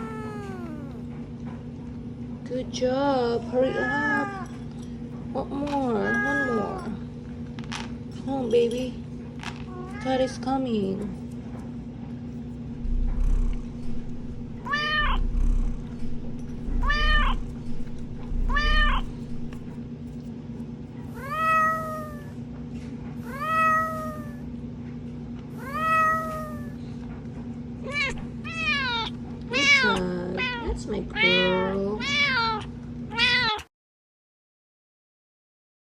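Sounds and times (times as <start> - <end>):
recorded cat meowing: 0.0 - 1.0, 14.6 - 15.8, 16.8 - 17.6, 18.3 - 19.5, 21.1 - 22.3, 23.2 - 24.5, 25.6 - 26.8
steady low hum: 0.0 - 33.5.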